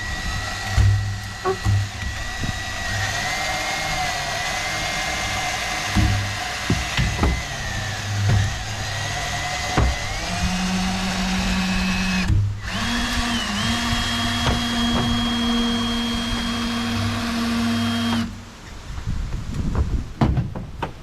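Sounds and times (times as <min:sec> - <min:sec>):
drill motor whine: 0:00.0 - 0:18.4
knocks: 0:05.9 - 0:07.4, 0:14.4 - 0:15.2, 0:19.7 - 0:21.0.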